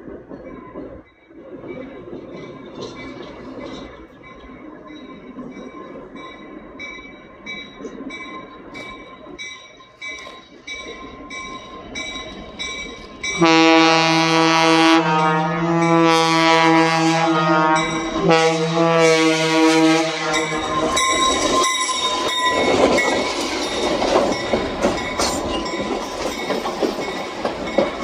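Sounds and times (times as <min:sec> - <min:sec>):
train rumbling: 0:00.0 - 0:28.0
locomotive horn blast: 0:13.4 - 0:20.8.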